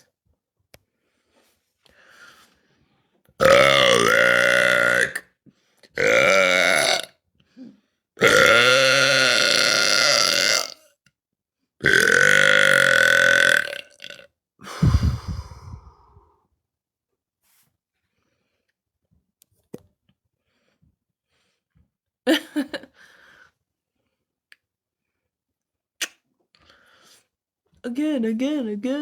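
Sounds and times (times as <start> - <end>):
woman belching: 3.4 - 5.2, 6.0 - 7.1, 8.2 - 10.8, 11.8 - 14.2.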